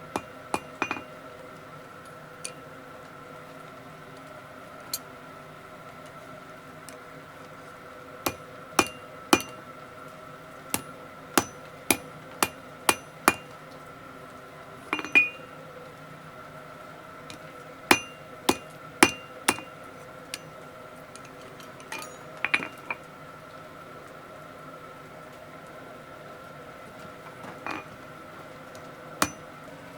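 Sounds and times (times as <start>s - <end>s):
hammer striking steel on anvil: 0.0s - 1.1s, 8.3s - 9.7s, 10.8s - 13.6s, 15.0s - 15.5s, 17.9s - 19.8s, 21.9s - 23.0s, 29.2s - 29.5s
steady hum: 0.0s - 3.5s, 4.4s - 21.2s, 28.9s - 29.9s.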